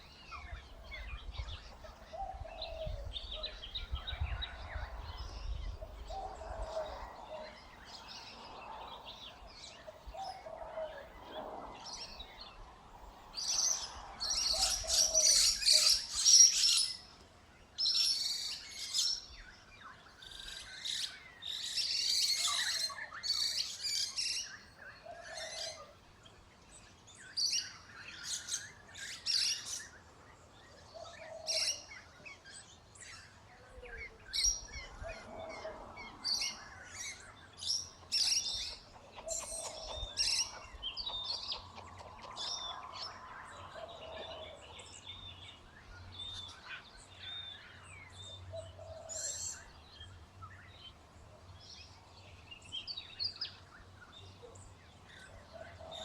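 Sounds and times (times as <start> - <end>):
birds chirping: 27.0 - 56.0.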